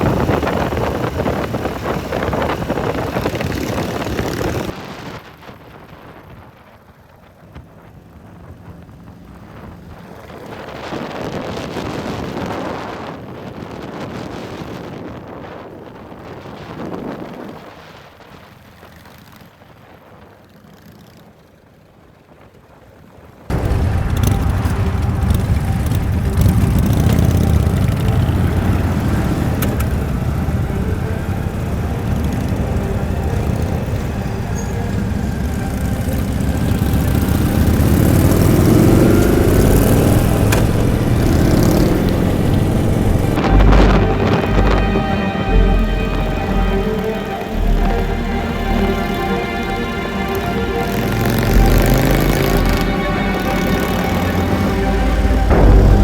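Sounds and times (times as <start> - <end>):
motorcycle engines: 0.0 - 4.8, 7.5 - 11.3, 23.5 - 56.0
deep engine drone: 23.5 - 56.0.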